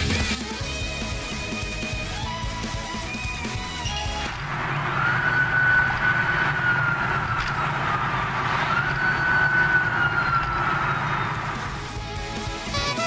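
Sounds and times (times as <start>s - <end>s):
low engine and road noise: 4.1s - 12.2s
motorcycle siren wailing: 4.3s - 12.0s.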